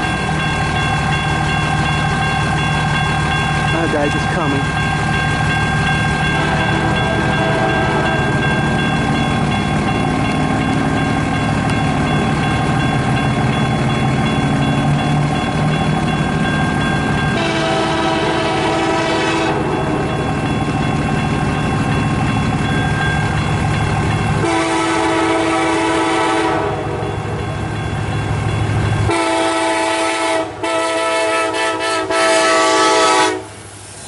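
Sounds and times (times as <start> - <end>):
passing train rumble: 0.0 - 34.0
locomotive air horn: 6.4 - 8.2, 17.4 - 19.7, 24.4 - 27.1, 29.1 - 33.6.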